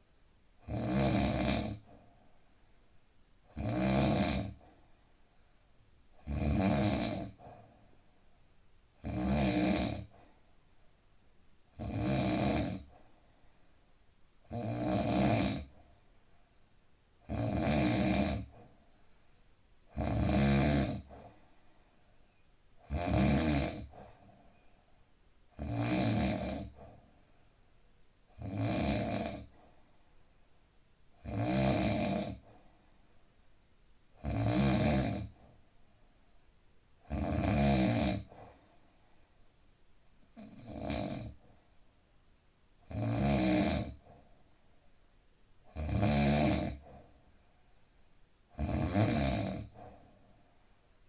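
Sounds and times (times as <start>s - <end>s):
man snoring: 0.6s - 1.9s, 3.5s - 4.6s, 6.2s - 7.5s, 9.0s - 10.1s, 11.8s - 12.9s, 14.5s - 15.7s, 17.3s - 18.6s, 19.9s - 21.1s, 22.8s - 24.0s, 25.6s - 26.8s, 28.4s - 29.5s, 31.2s - 32.5s, 34.2s - 35.4s, 37.1s - 38.4s, 40.4s - 41.4s, 42.9s - 44.0s, 45.7s - 46.9s, 48.5s - 49.8s.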